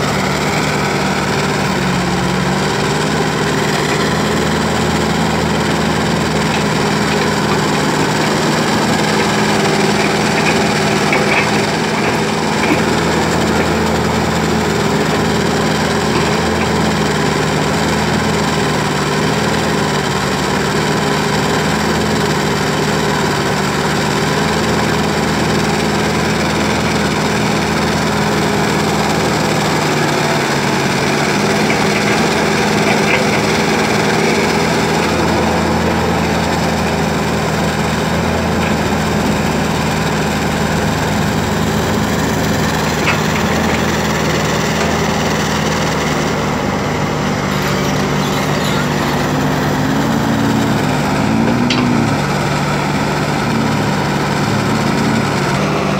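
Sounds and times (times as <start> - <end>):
excavator diesel engine running: 0.0 - 55.9.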